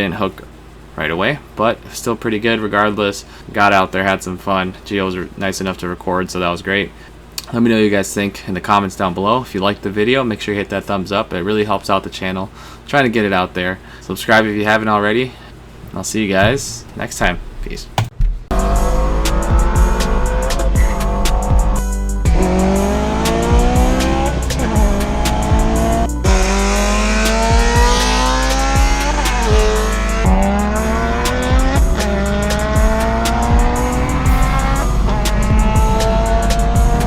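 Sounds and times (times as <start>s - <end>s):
music with heavy bass beat: 16.4s - 37.0s
car accelerating hard: 18.5s - 21.7s, 22.3s - 37.0s.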